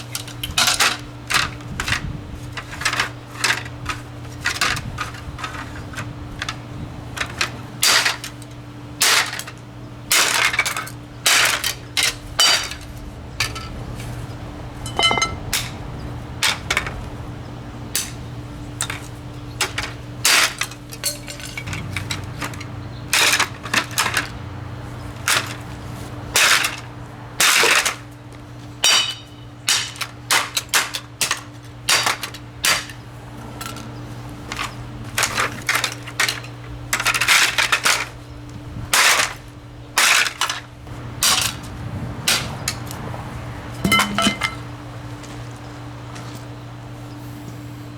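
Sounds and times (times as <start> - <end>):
fan being smashed: 0.0 - 6.5, 7.1 - 13.8, 14.8 - 15.8, 16.4 - 17.0, 17.9 - 18.2, 18.8 - 24.4, 25.1 - 28.2, 28.8 - 33.0, 34.5 - 38.2, 38.8 - 43.0, 43.8 - 45.4.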